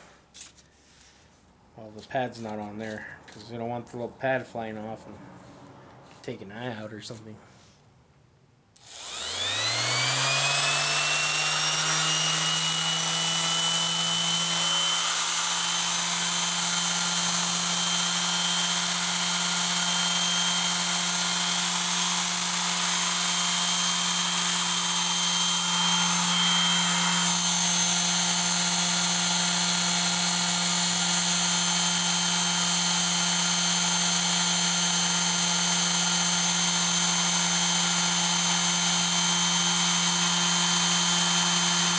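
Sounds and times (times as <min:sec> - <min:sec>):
palm sander running with whine: 0:08.8 - 0:41.9.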